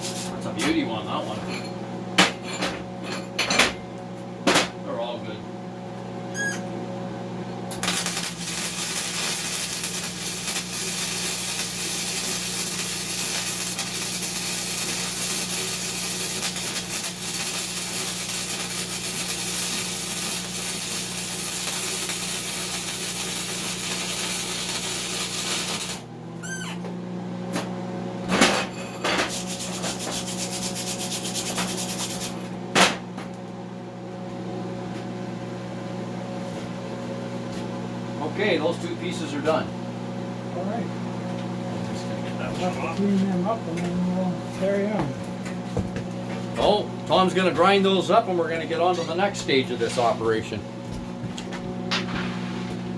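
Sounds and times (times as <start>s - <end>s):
welding arc crackling and hissing: 0.0s - 0.4s, 7.7s - 26.6s, 29.2s - 32.5s, 46.6s - 50.6s
electrical hum: 0.0s - 52.9s.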